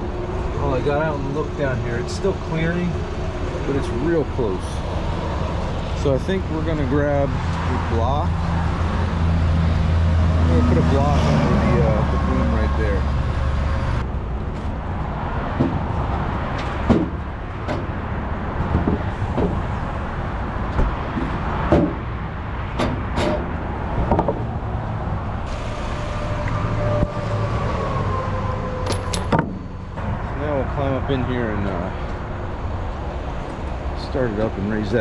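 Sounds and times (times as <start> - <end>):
vehicle engine rumbling: 0.0 - 35.0
short knocks and clunks: 16.6 - 17.9, 18.6 - 19.6, 20.7 - 22.1.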